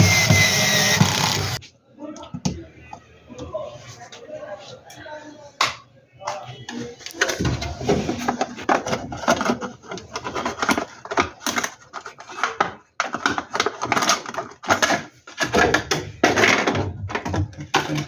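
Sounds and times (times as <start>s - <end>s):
hard parts knocking and clattering: 0.0s - 1.6s, 7.1s - 18.0s.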